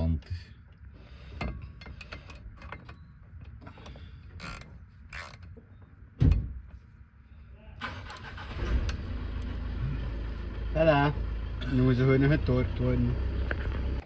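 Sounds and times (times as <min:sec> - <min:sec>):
ratchet wrench clicking: 0:04.4 - 0:05.5.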